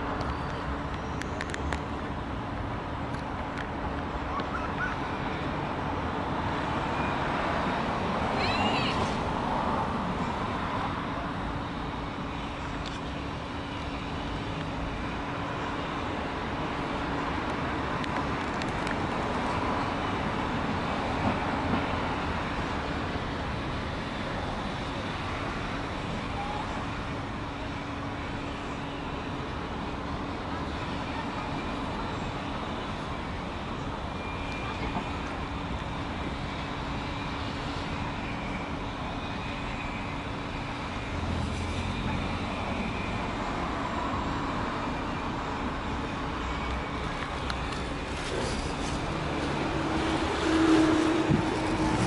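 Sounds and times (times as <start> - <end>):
distant road traffic: 0.0 - 52.0
faint voices: 8.3 - 9.2.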